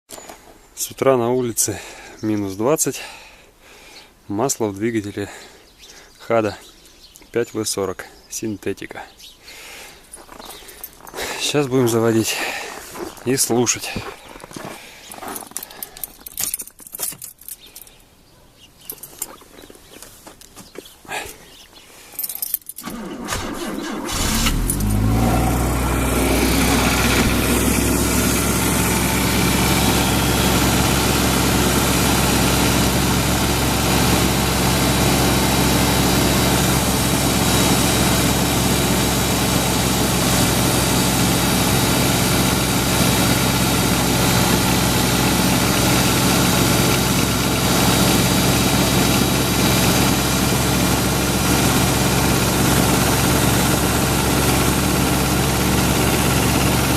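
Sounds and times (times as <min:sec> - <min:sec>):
starter motor cranking: 0:22.8 - 0:56.9
car engine idling: 0:22.9 - 0:56.9.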